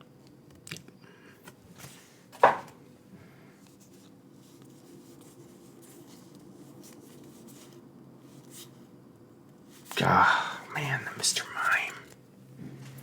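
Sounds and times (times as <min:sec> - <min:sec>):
trading cards clicking and rustling: 0:10.8 - 0:12.2.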